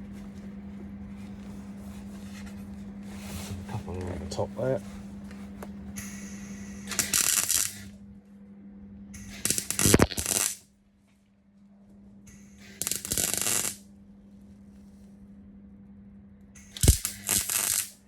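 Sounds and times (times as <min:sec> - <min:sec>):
steady low hum: 0:00.0 - 0:18.0
welder crackling: 0:06.0 - 0:07.9, 0:09.2 - 0:10.6, 0:12.3 - 0:13.8, 0:16.6 - 0:18.0.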